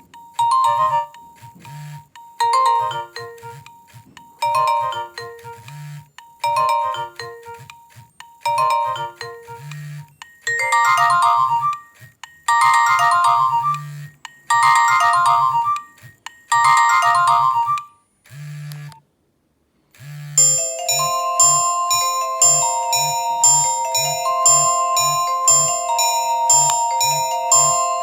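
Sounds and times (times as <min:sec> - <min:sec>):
phone ringtone melody: 0:00.0 - 0:18.0, 0:20.3 - 0:28.0
low pulsing buzz: 0:20.0 - 0:20.6.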